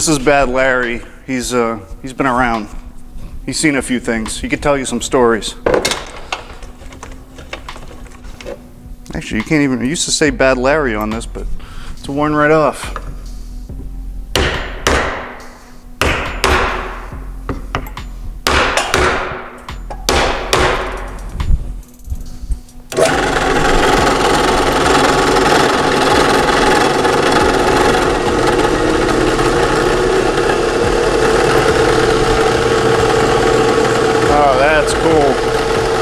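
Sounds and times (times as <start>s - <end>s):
drill press motor running: 22.9s - 36.0s.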